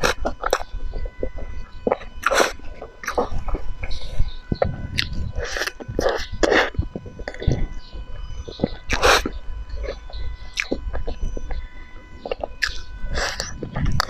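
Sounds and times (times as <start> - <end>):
mouth clicks: 0.0 - 14.0
cake being bitten and chewed: 1.9 - 3.4, 12.2 - 14.0.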